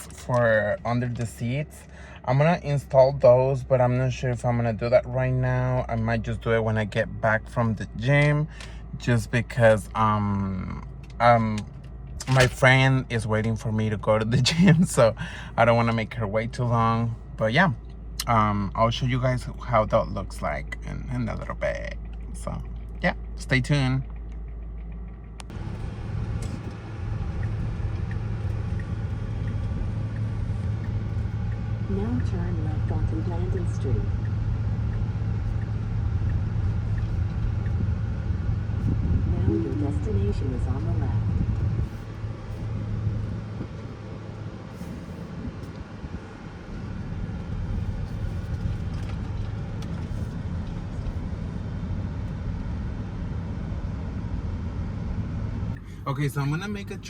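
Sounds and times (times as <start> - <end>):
road and tyre noise hum: 0.0 - 57.0
soft ticking: 21.9 - 37.9.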